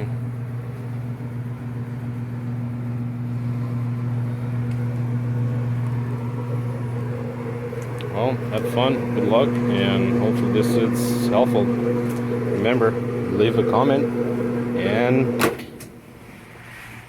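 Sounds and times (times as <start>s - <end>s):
washing machine motor hum: 0.0s - 17.0s.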